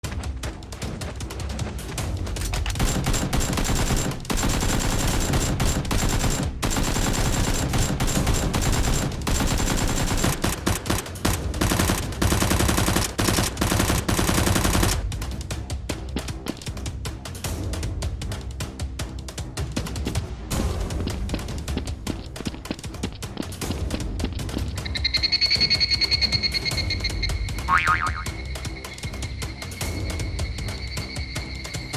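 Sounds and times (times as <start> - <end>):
rapid automatic gunfire: 2.8 - 15.0.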